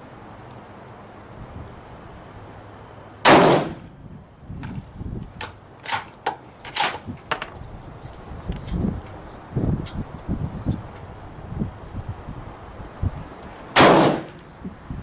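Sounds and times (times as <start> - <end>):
rifle shot: 3.2 - 3.8, 13.8 - 14.4.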